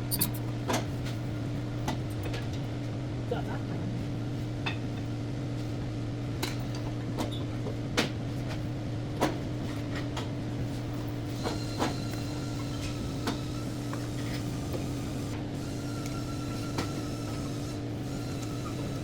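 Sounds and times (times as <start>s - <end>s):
metal tools clinking and knocking: 0.1s - 0.4s.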